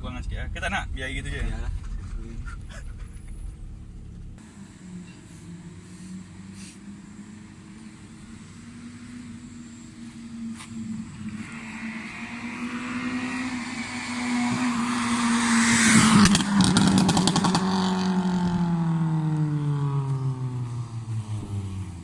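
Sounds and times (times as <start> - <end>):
exhaust pops and crackles: 0.0 - 4.4, 13.8 - 18.6
car engine running: 0.0 - 22.0.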